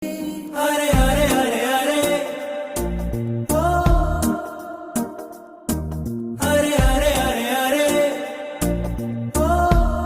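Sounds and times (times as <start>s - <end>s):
person singing: 0.0s - 10.0s
steady bass beat: 1.0s - 1.3s, 2.9s - 4.4s, 5.7s - 7.3s, 8.8s - 10.0s.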